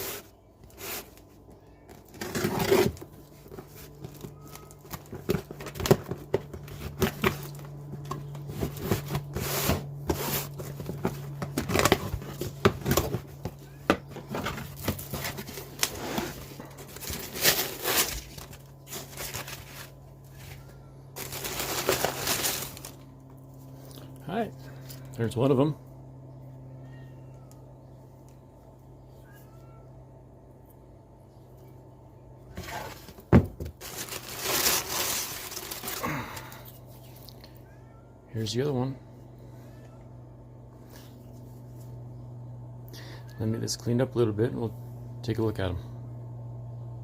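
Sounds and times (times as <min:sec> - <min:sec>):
packaging crinkling: 0:14.4 - 0:20.6, 0:21.2 - 0:23.2, 0:33.8 - 0:36.6
packaging tearing: 0:14.7 - 0:20.0, 0:21.2 - 0:23.0, 0:33.8 - 0:36.4.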